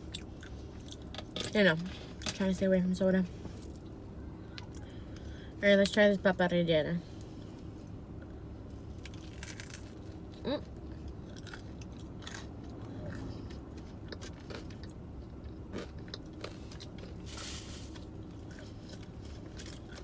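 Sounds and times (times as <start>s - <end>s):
person chewing crunchy food: 0.0s - 1.4s, 8.9s - 20.0s
steady low hum: 0.0s - 20.0s.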